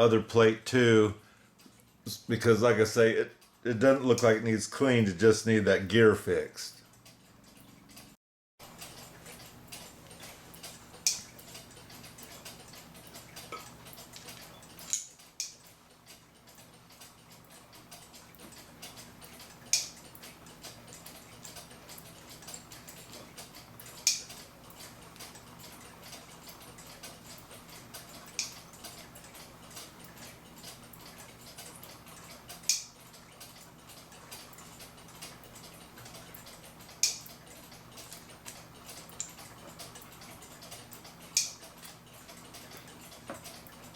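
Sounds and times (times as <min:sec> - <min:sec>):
faint steady hum: 0:00.0 - 0:08.0
sharp high clicks: 0:08.8 - 0:43.8.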